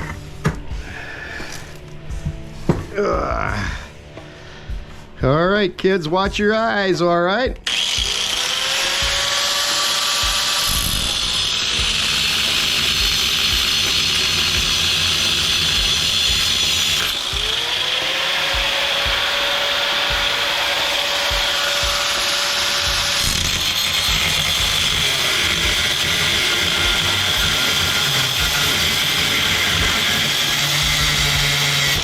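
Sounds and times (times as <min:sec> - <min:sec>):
cut-off wheel grinding steel: 0:07.6 - 0:32.0
power tool motor whine: 0:07.6 - 0:32.0.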